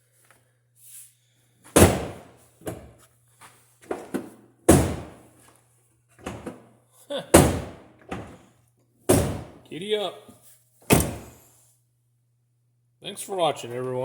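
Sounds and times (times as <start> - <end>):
car door slamming shut: 1.8 - 2.2, 4.7 - 5.2, 7.4 - 7.8, 9.1 - 9.6, 10.9 - 11.3.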